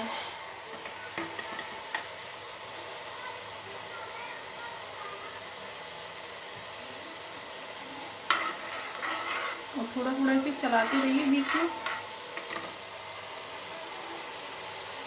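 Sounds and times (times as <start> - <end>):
spoon scraping a pan: 0.0 - 2.1, 8.2 - 12.8
liquid simmering hiss: 0.0 - 15.0.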